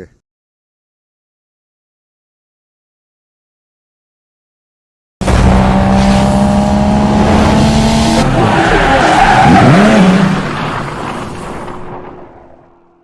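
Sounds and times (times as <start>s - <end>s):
loud car: 5.2s - 13.0s.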